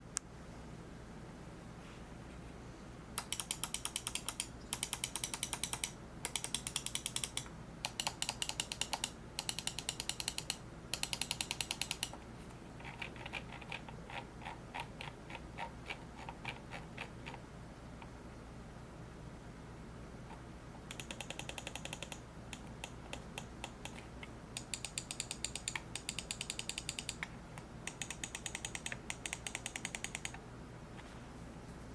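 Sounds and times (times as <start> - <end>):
mouse clicking: 3.2 - 12.2, 20.9 - 24.0, 24.6 - 30.4.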